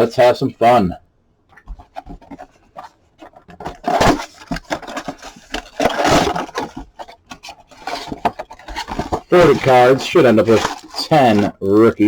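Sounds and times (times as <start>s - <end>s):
cardboard packaging rustling: 1.5s - 12.0s.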